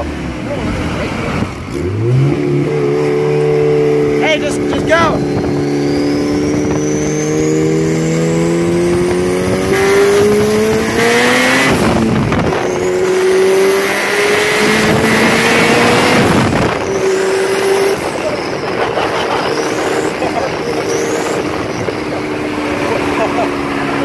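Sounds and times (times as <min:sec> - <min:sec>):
car engine at full throttle: 0:00.0 - 0:24.0
turbo whistle: 0:05.1 - 0:07.7.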